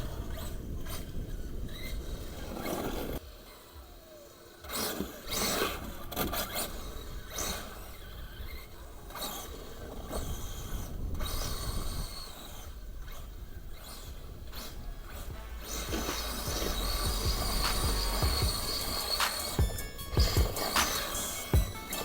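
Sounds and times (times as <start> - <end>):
radio-controlled car driving: 0.0 - 19.6
scraping rushing noise: 14.1 - 22.0.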